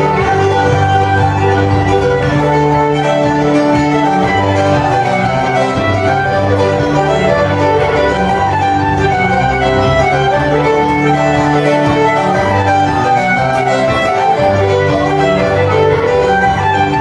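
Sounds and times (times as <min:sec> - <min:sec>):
fiddle playing a dance tune: 0:00.0 - 0:17.0
guitar accompaniment: 0:00.0 - 0:17.0.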